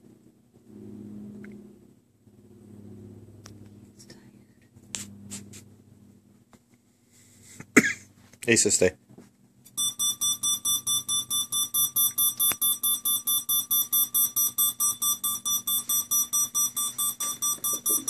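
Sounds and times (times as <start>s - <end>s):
alarm clock beeping: 9.8s - 18.0s.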